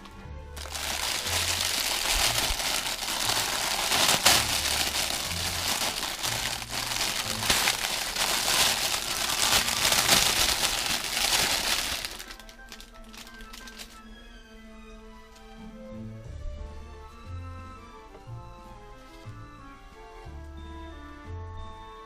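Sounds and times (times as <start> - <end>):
packaging crinkling: 0.6 - 14.0.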